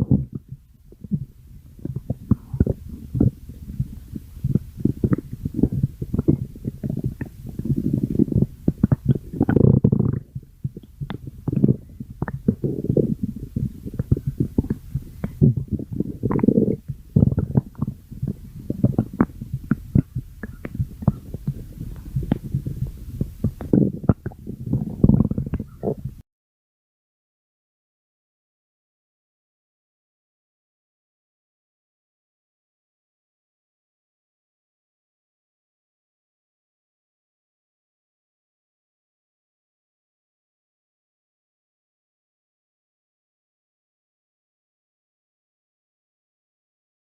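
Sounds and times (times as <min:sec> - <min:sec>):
stomach growling and gurgling: 0:00.0 - 0:26.2.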